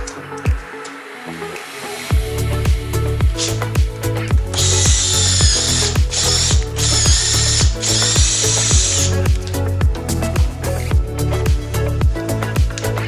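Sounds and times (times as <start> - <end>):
music with kick-drum beat: 0.0 - 0.9, 2.1 - 13.0
tool ratcheting buzz: 2.5 - 10.8.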